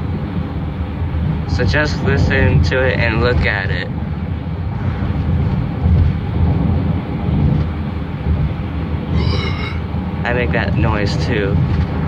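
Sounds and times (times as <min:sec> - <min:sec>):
tyres rumbling on rough asphalt: 0:00.0 - 0:12.0
brief high-pitched tone: 0:09.2 - 0:09.8.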